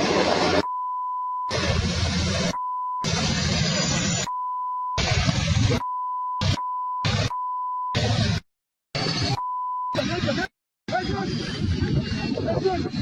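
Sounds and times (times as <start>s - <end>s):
bursts of loud noisy audio: 0.0s - 13.0s
steady beep tone: 0.6s - 1.8s, 2.4s - 3.3s, 4.0s - 8.2s, 9.1s - 10.4s.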